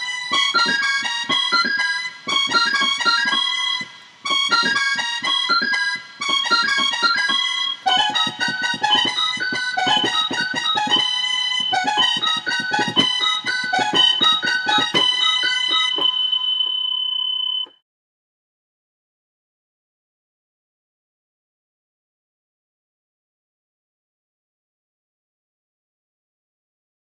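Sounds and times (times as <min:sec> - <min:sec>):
low thudding beat: 0:00.0 - 0:16.8
staccato keyboard melody: 0:00.0 - 0:17.8.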